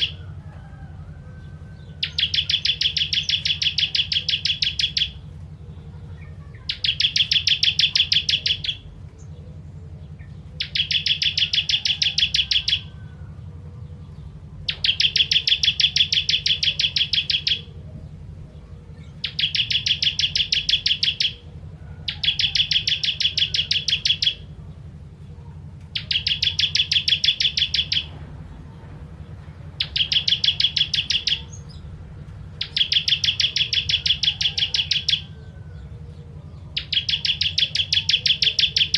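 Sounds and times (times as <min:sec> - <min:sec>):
bird singing high trill: 0:00.0 - 0:00.2, 0:01.8 - 0:05.3, 0:06.2 - 0:09.4, 0:10.2 - 0:13.1, 0:13.8 - 0:18.2, 0:18.9 - 0:21.5, 0:22.1 - 0:24.7, 0:25.9 - 0:28.2, 0:29.8 - 0:31.9, 0:32.5 - 0:38.9.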